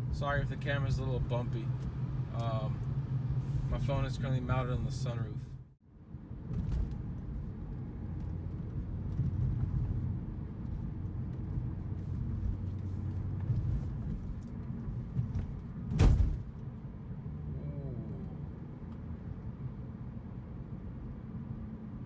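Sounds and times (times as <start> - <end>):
car engine and road hum: 0.0 - 22.0
loud thump: 15.2 - 16.5.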